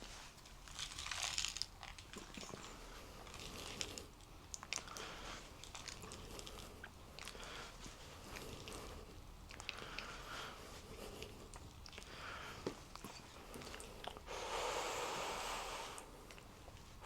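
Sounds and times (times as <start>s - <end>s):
man breathing heavily: 6.2s - 12.8s, 13.4s - 16.3s.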